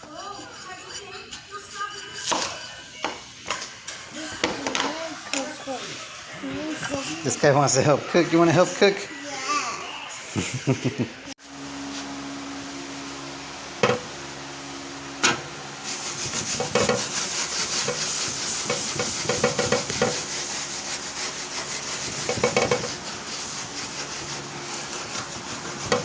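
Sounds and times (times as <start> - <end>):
meat sizzling on a grill: 15.0 - 26.0.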